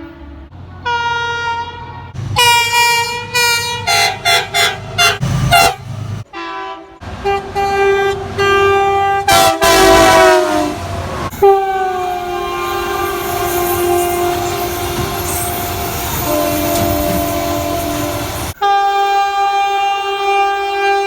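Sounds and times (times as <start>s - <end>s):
train horn blasts: 0.8s - 21.0s.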